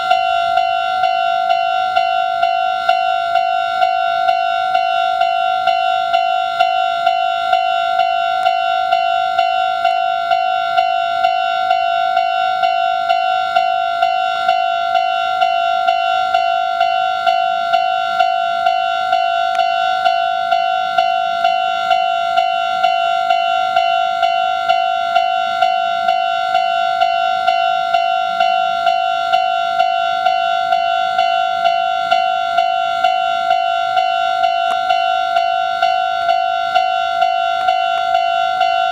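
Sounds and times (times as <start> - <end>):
level-crossing electronic bell: 0.0 - 38.9.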